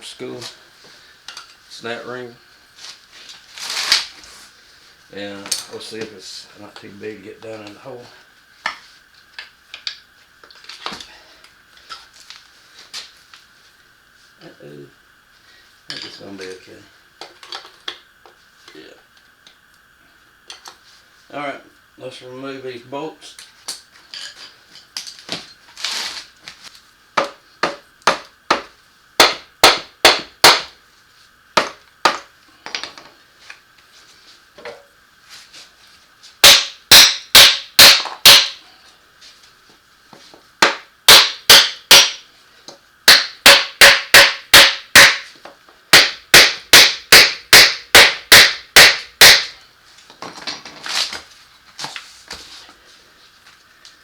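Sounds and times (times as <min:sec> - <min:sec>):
hammer striking metal wrench: 0:36.4 - 0:38.6, 0:40.6 - 0:42.2, 0:43.1 - 0:45.3, 0:46.0 - 0:49.5.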